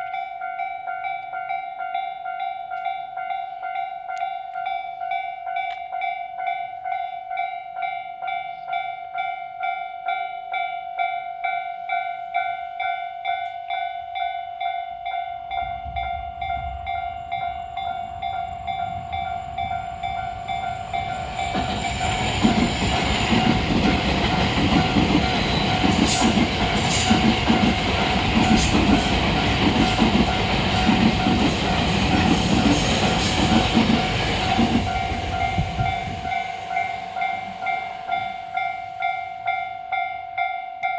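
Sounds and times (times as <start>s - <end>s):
train passing: 13.7s - 40.9s.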